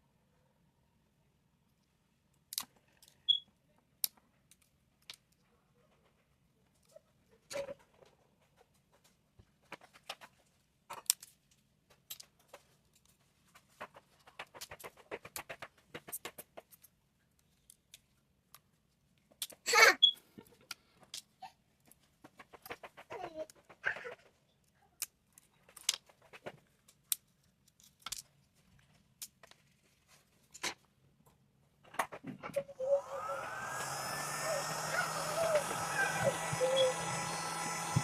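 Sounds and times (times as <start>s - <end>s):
clicks and taps of small tools: 24.6s - 28.3s.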